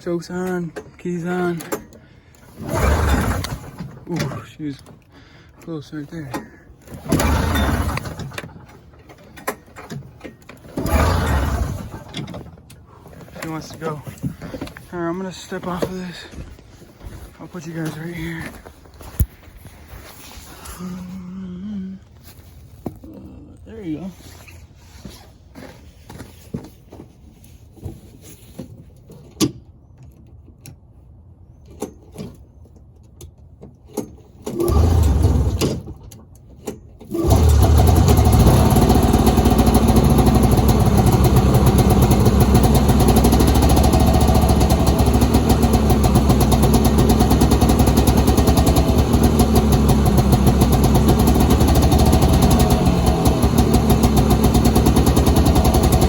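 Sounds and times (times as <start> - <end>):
two-stroke engine starting and running: 0.0 - 16.3, 34.4 - 56.0.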